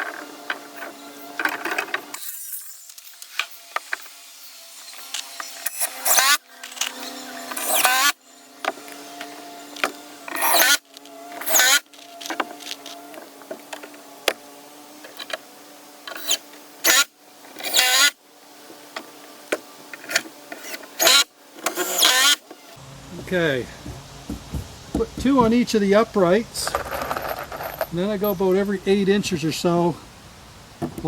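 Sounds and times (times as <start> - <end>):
power drill driving screws: 0.0 - 14.4, 15.0 - 22.8
steady low hum: 22.8 - 26.7.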